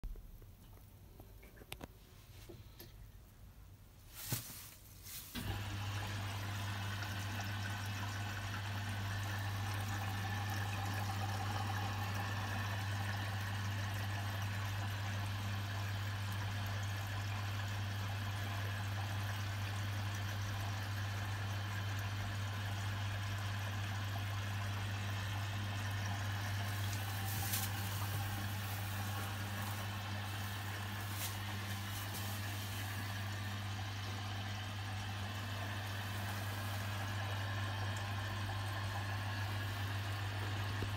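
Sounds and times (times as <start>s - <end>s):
washing machine humming: 4.2s - 40.9s
water rushing into drum: 5.3s - 14.6s, 24.8s - 40.9s.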